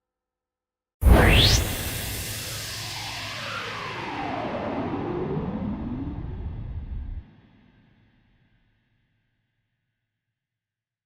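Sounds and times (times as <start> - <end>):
loud bassy sound effect: 1.0 - 2.9.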